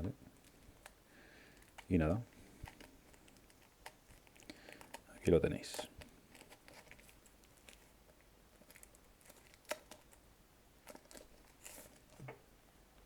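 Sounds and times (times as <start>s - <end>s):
cardboard rustle: 10.8s - 12.3s.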